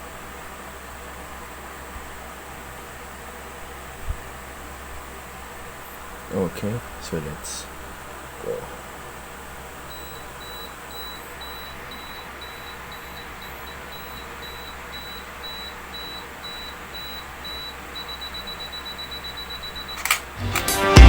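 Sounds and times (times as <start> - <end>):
camera self-timer beeping: 9.9 - 20.2.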